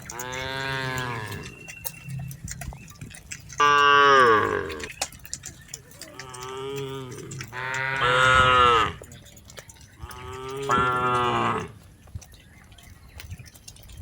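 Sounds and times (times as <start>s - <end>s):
cattle mooing: 0.0s - 2.2s, 3.6s - 5.0s, 6.0s - 9.1s, 10.0s - 11.8s.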